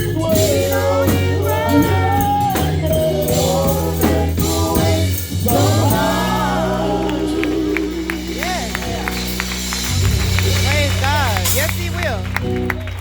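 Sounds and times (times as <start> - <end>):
group singing in harmony: 0.0 - 9.5
band accompaniment: 0.0 - 13.0
low bass chord: 0.0 - 13.0.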